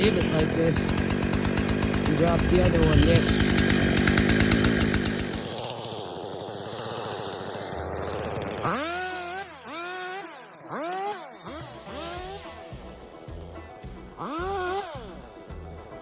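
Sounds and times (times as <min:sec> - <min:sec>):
chainsaw running: 0:00.0 - 0:16.0
music with gliding melody: 0:08.8 - 0:16.0.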